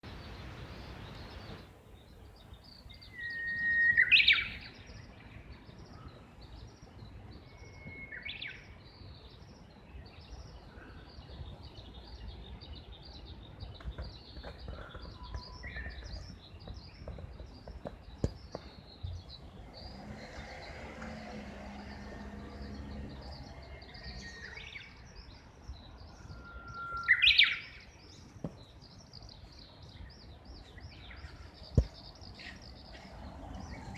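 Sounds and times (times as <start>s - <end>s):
bird whistling song: 2.9s - 4.9s, 7.4s - 8.6s, 26.1s - 28.0s.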